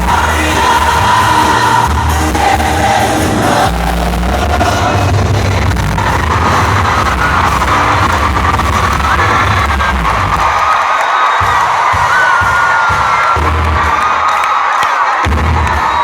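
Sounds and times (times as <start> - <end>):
live gospel band music: 0.0 - 10.2.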